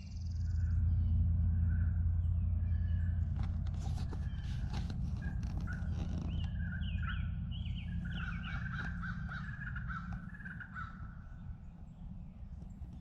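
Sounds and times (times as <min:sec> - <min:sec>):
steady low rumble: 0:00.0 - 0:13.0
bird calling: 0:02.8 - 0:13.0.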